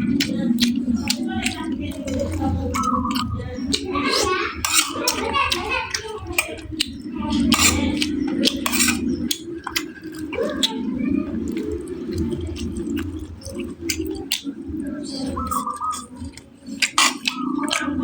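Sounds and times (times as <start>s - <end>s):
chewing: 0.0s - 18.0s
cutlery clinking on a plate: 7.5s - 9.0s.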